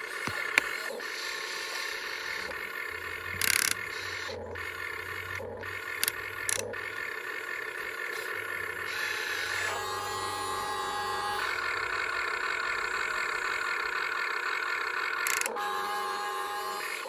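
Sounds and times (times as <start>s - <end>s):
toy excavator motors whining: 0.0s - 17.0s
sharp clicks: 0.1s - 1.0s, 3.3s - 4.8s, 5.6s - 6.9s, 15.2s - 15.6s.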